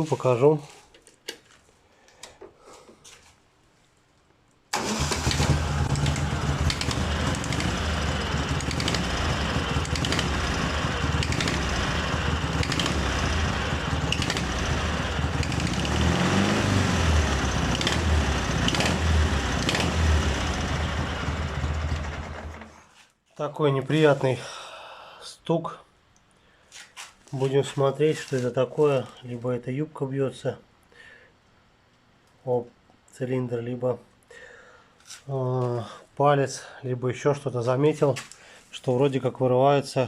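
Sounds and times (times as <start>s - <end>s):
motorcycle engine running: 5.3s - 22.6s.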